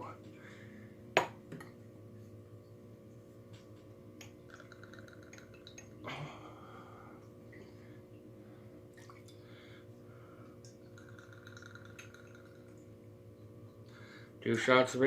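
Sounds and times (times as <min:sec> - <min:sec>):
steady low hum: 0:00.0 - 0:15.0
liquid pouring into glass: 0:10.6 - 0:12.9.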